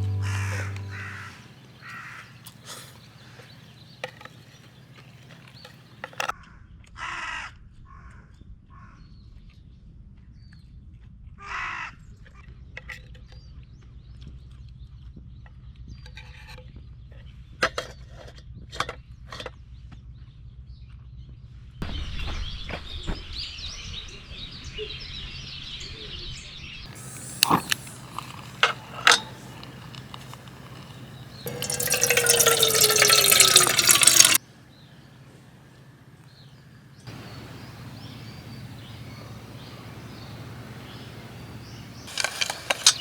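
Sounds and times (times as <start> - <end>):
low steady hum: 0.0 - 1.6, 37.1 - 43.0
harsh bird calls: 37.1 - 43.0.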